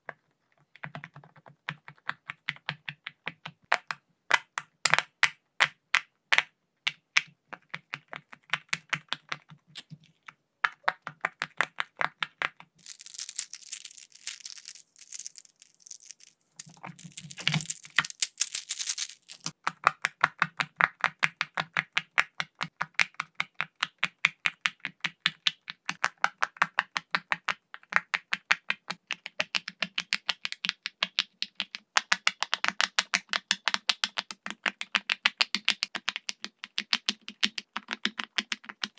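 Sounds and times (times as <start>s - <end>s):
scratchy rubbing and crackling: 12.8s - 19.6s.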